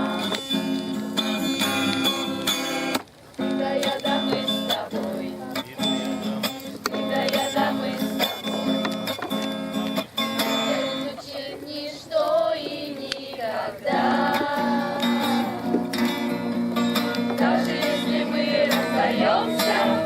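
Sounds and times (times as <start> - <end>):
acoustic guitar: 0.0 - 20.0
person singing: 10.5 - 16.4.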